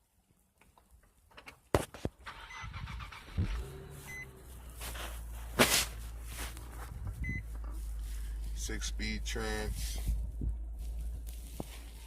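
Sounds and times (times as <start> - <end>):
car engine starting and idling: 2.1 - 10.0
car warning chime beeps: 2.3 - 2.8, 3.8 - 4.4, 7.2 - 7.5.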